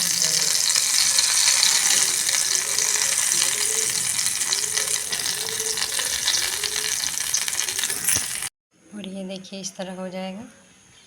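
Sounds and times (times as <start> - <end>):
hot ghee sizzling and crackling: 0.0 - 8.5.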